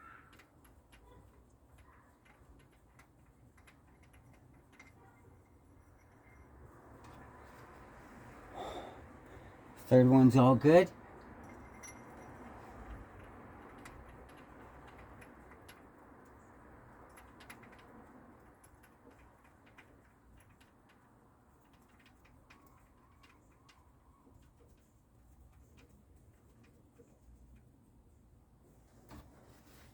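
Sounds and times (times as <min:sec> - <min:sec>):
light ticks and clicks: 0:11.2 - 0:27.7.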